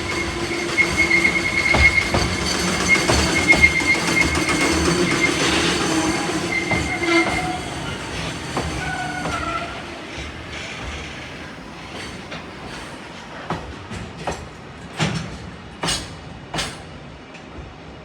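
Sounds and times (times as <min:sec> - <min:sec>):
wheels squealing: 0:00.0 - 0:13.0
sharp clacks from rails: 0:00.0 - 0:17.6
train passing: 0:00.0 - 0:18.0.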